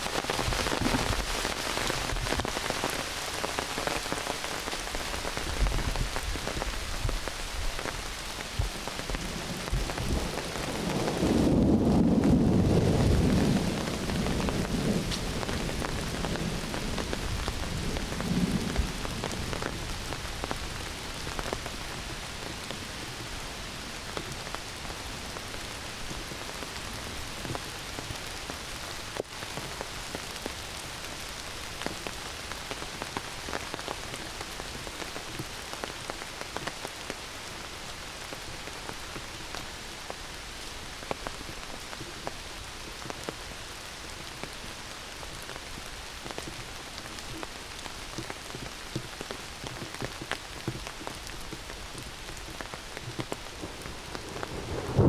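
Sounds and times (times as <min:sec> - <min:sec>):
heavy rain in a forest: 0:00.0 - 0:55.0
thunder rumble: 0:00.3 - 0:03.6, 0:05.1 - 0:23.6, 0:50.8 - 0:55.0.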